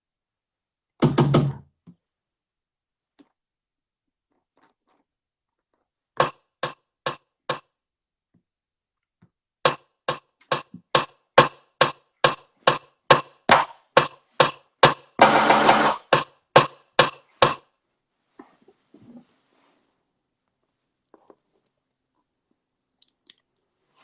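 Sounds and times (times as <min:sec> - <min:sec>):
sharp knocks: 0:09.7 - 0:17.6.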